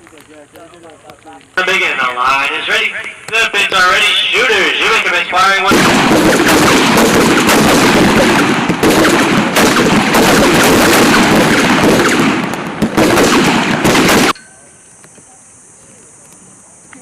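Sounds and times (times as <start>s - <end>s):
rifles firing in volley: 1.6s - 14.4s.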